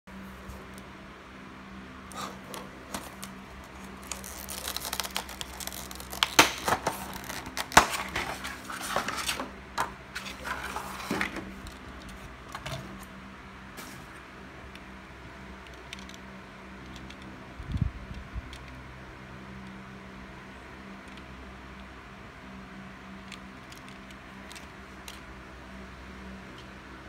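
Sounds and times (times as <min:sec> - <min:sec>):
packaging rustling and tearing: 0:02.2 - 0:09.6.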